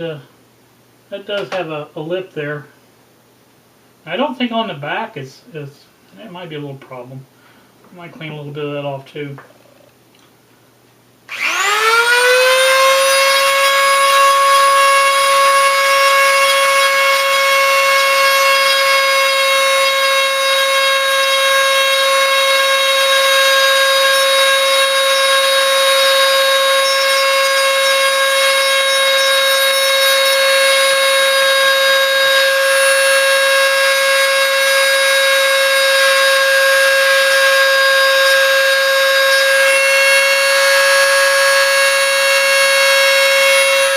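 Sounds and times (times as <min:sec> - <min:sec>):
rotary tool whining: 0:11.3 - 0:43.9.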